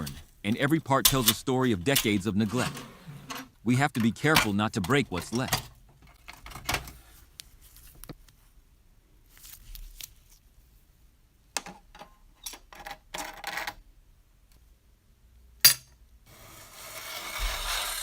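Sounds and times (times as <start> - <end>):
rubbing scraping sound: 16.3 - 18.0.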